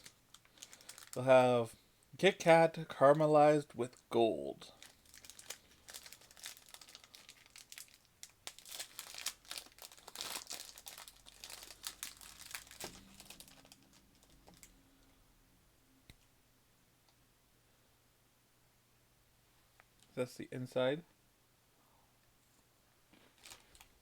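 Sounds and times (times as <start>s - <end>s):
wrapper crinkling and tearing: 0.0s - 1.4s, 4.7s - 14.8s, 23.2s - 24.0s.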